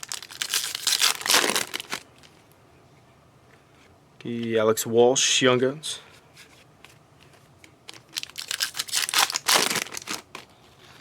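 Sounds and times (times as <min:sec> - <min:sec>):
foil wrapper crinkling and tearing: 0:00.0 - 0:02.3, 0:07.9 - 0:10.5.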